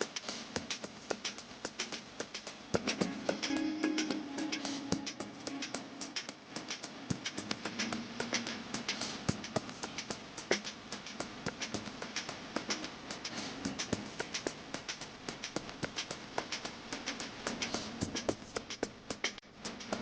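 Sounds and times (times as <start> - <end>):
sizzling hiss: 0.0 - 20.0.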